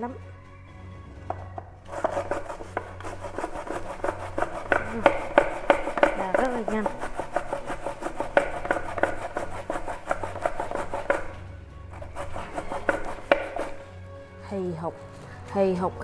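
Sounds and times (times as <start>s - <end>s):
grating on metal grater: 1.9s - 13.9s.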